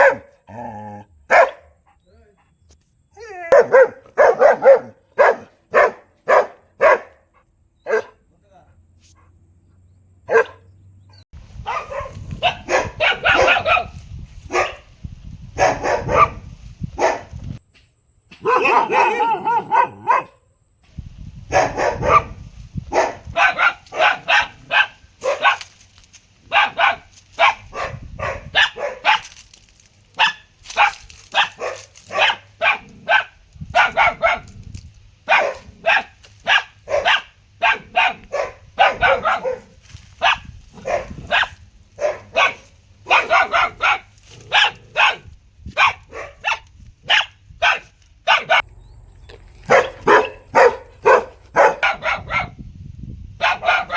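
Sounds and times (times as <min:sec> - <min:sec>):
dog barking: 0:00.0 - 0:00.4, 0:01.3 - 0:01.8, 0:03.5 - 0:08.2, 0:10.2 - 0:10.7, 0:11.6 - 0:14.9, 0:15.6 - 0:17.4, 0:18.4 - 0:20.4, 0:21.5 - 0:25.7, 0:26.5 - 0:29.3, 0:30.2 - 0:34.5, 0:35.3 - 0:48.7, 0:49.6 - 0:52.6, 0:53.4 - 0:53.9.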